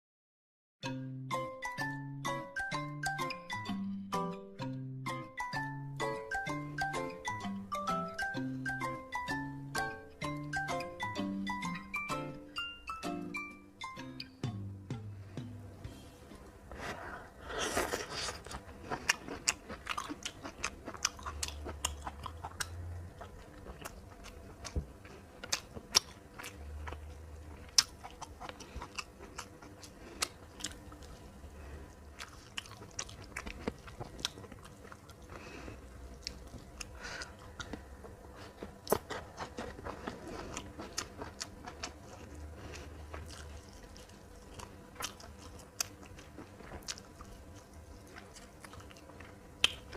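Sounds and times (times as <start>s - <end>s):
person chewing crunchy food: 16.8s - 49.9s.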